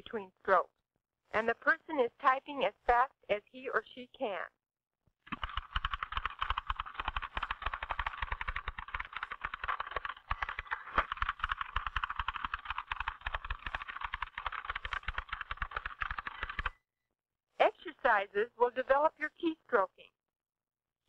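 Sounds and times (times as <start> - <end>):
typewriter keys clicking fast: 5.3 - 16.7.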